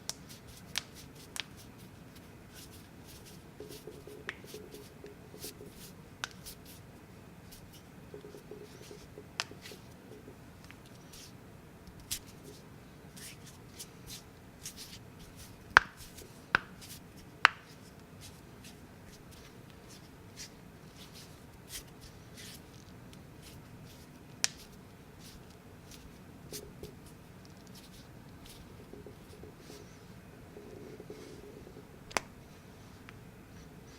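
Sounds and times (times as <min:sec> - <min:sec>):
hands rustling: 0:00.1 - 0:32.3.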